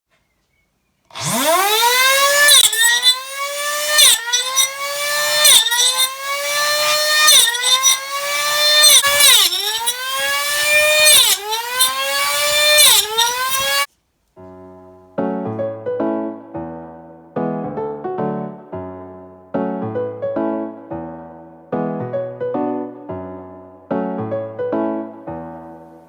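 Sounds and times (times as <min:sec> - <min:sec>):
table saw motor whining: 0:01.1 - 0:13.9.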